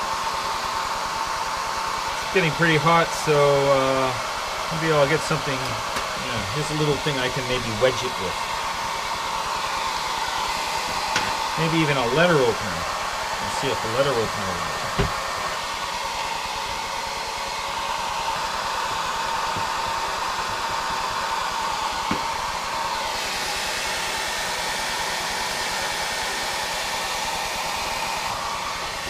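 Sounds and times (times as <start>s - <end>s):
hair dryer blowing: 0.0s - 29.0s.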